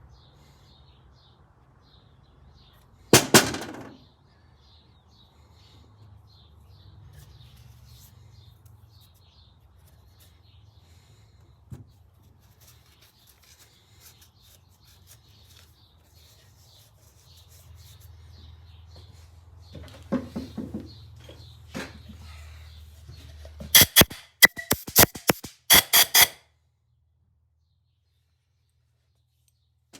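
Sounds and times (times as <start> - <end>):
sharp click: 23.8 - 26.4.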